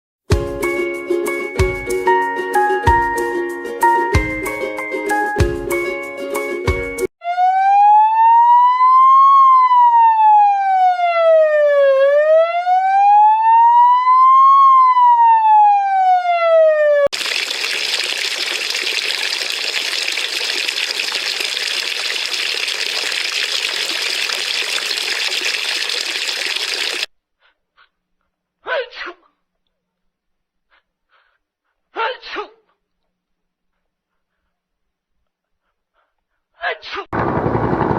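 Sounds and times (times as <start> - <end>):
electronic siren wailing: 7.2 - 17.1.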